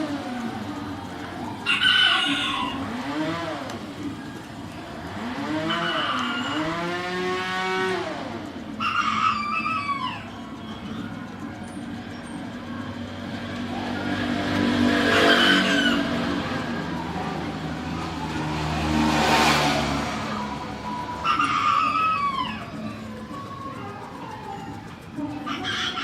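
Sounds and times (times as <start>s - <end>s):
chickens calling: 0.0s - 26.0s
motor vehicle passing by: 0.0s - 26.0s.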